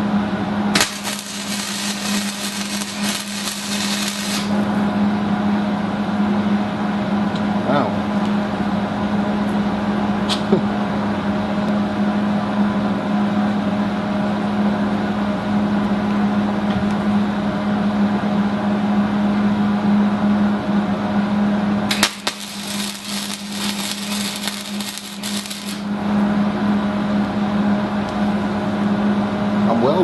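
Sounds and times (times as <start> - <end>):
welding arc crackling: 0.7 - 4.6, 21.9 - 25.9
welder humming: 0.7 - 4.9, 21.7 - 26.3.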